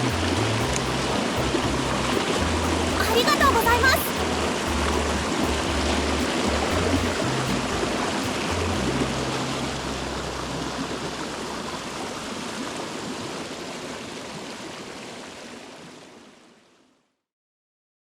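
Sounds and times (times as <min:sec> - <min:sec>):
low background music: 0:00.0 - 0:12.0
stream rushing over rocks: 0:00.0 - 0:16.8.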